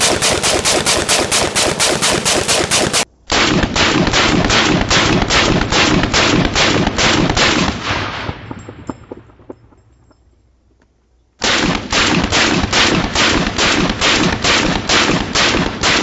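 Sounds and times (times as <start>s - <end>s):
rifle firing rapidly: 0.0s - 8.3s, 11.4s - 16.0s.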